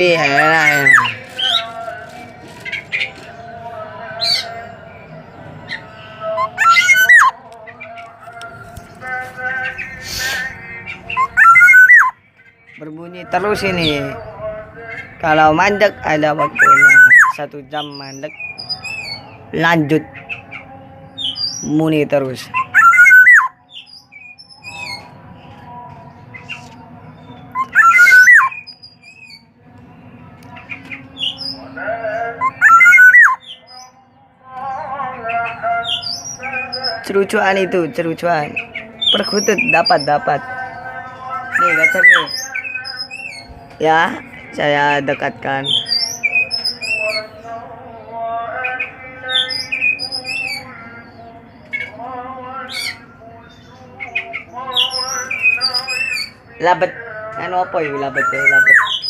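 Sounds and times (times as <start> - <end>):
bird fluty whistled call: 11.1 - 12.2, 27.6 - 29.4, 58.2 - 59.0
bird whistled calls: 11.1 - 12.2, 16.6 - 17.4, 22.5 - 25.0, 27.5 - 29.4, 32.4 - 33.9, 58.2 - 59.0.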